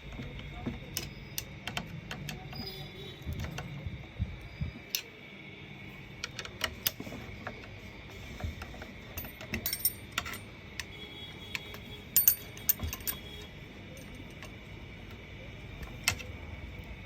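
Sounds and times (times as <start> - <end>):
small metal parts clinking: 9.1 - 10.5, 11.6 - 14.7.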